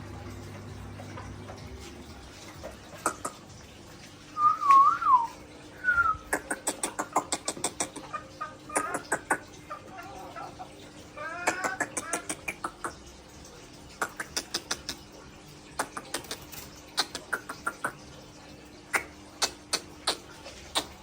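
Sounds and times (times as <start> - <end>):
wavering whistle: 4.4 - 6.2.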